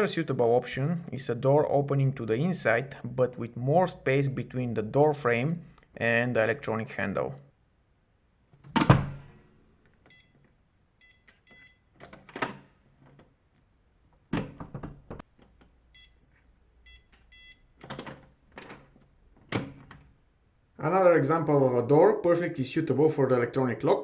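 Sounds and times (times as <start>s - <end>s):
door lock short high beeps: 10.1s - 10.4s, 11.0s - 11.9s, 16.0s - 16.2s, 16.9s - 17.7s.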